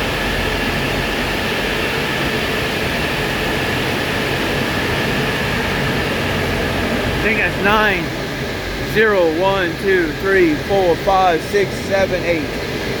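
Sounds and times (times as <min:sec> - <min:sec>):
cooling fans droning: 0:00.0 - 0:13.0
faint high whine: 0:04.6 - 0:13.0.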